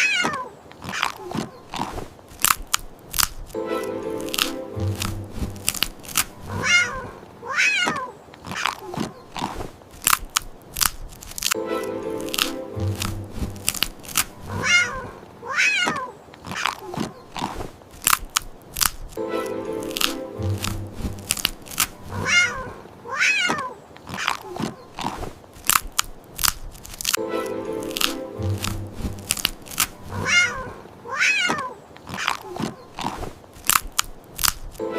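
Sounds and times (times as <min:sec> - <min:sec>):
cat meowing: 0:00.0 - 0:00.5, 0:06.5 - 0:08.7, 0:14.5 - 0:16.9, 0:22.1 - 0:23.8, 0:30.1 - 0:32.4
cat crunching hard candy: 0:00.8 - 0:03.6, 0:04.2 - 0:07.0, 0:08.4 - 0:11.6, 0:12.2 - 0:15.0, 0:16.4 - 0:19.2, 0:19.8 - 0:22.7, 0:24.0 - 0:27.2, 0:27.8 - 0:30.7, 0:32.0 - 0:34.8
music: 0:03.6 - 0:05.8, 0:11.6 - 0:13.8, 0:19.2 - 0:21.5, 0:27.2 - 0:29.6.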